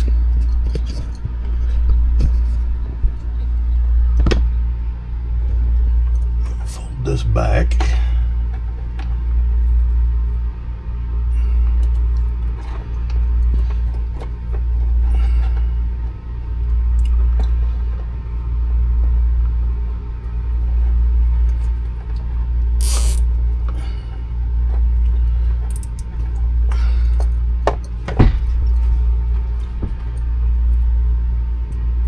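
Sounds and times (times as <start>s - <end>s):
cable tie zipping: 22.8s - 23.2s
sharp click: 22.8s - 23.2s.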